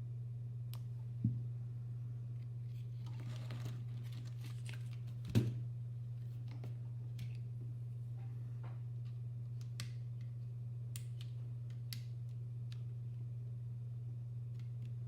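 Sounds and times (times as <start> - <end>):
steady low hum: 0.0 - 15.0.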